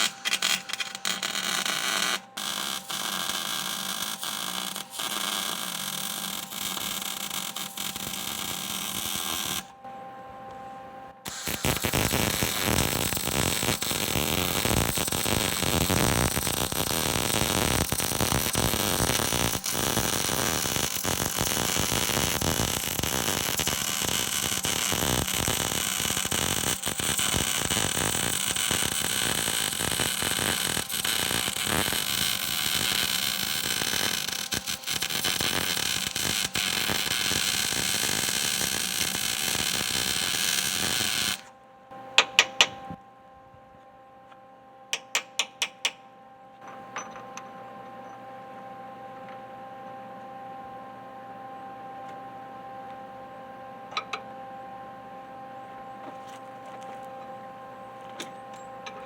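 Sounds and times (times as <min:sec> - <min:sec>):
welding arc crackling: 0:00.0 - 0:09.7, 0:11.3 - 0:41.5.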